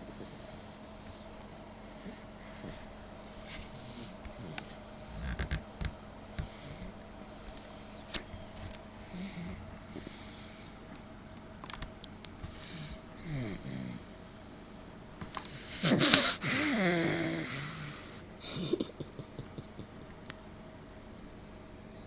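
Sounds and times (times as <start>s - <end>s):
baby snoring: 12.6s - 14.1s, 15.6s - 18.2s.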